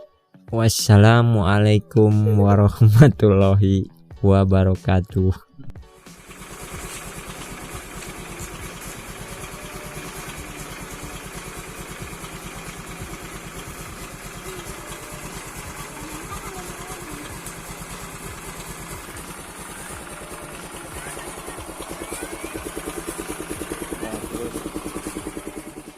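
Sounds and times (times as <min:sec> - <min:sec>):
scooter engine idling: 0:05.9 - 0:25.9.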